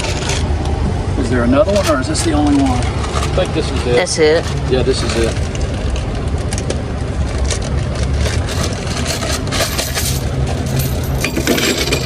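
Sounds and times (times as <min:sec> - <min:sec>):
metal chains clinking: 0:08.2 - 0:12.0.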